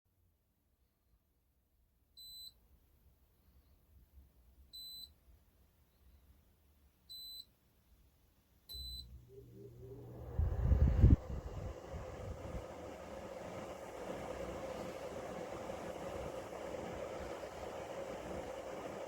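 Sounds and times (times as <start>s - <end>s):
low hum and rumble: 8.7s - 18.7s.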